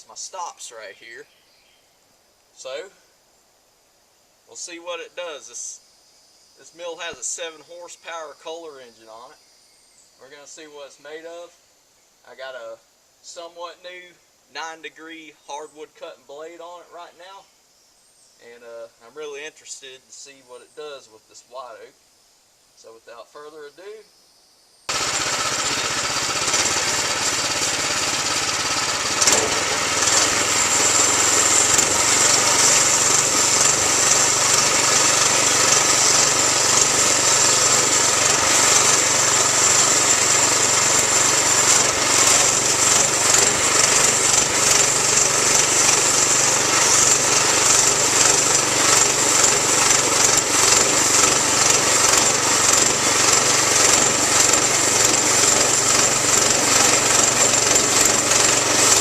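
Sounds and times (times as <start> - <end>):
band blade sawing through log: 24.9 - 59.0
bandsaw mill engine running: 24.9 - 59.0.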